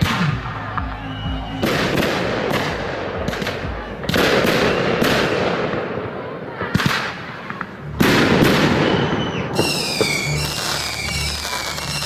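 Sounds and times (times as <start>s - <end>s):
fireworks bangs: 0.0s - 12.0s
fireworks crackle: 6.8s - 12.0s.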